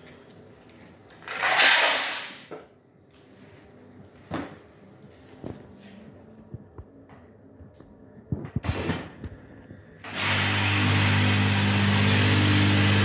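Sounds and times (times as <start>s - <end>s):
packing machine rushing burst: 10.1s - 13.0s.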